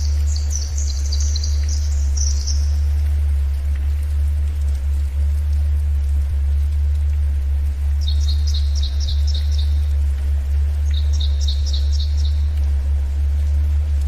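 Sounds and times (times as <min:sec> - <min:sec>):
songbird chirping: 0:00.0 - 0:03.4, 0:07.8 - 0:13.7
forest ambience hiss: 0:00.0 - 0:14.0
steady low tone: 0:00.0 - 0:14.0.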